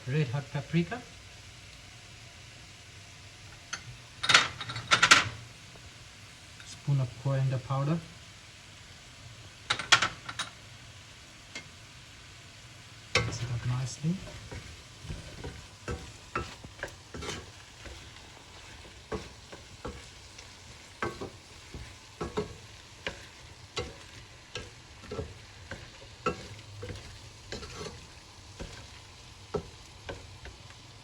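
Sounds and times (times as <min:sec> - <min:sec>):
sauce sizzling in a pot: 0:00.0 - 0:31.0
spoon knocking and scraping a pot: 0:09.7 - 0:10.6, 0:13.1 - 0:30.8.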